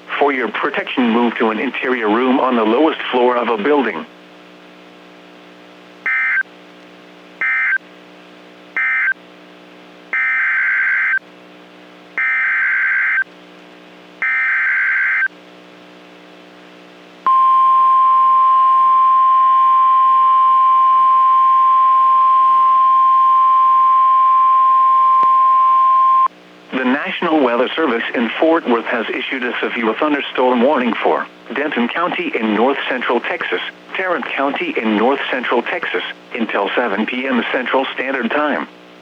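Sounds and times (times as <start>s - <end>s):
faint low hum: 0.0s - 39.0s
steady warning alarm tone: 6.1s - 6.4s, 7.4s - 7.8s, 8.8s - 9.2s, 10.2s - 11.2s, 12.2s - 13.2s, 14.2s - 15.3s, 17.3s - 26.3s.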